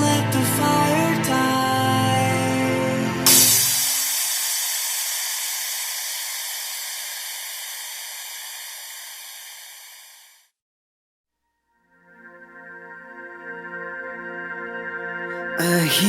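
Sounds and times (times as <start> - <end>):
electronic cymbal crash: 3.3 - 10.3.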